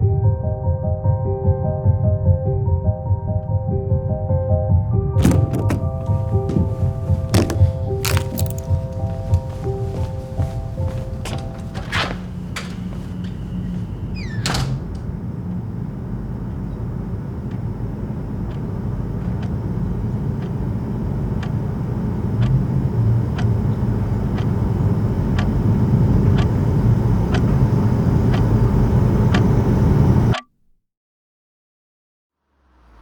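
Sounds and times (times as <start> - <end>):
motor vehicle rumble: 5.2 - 15.9.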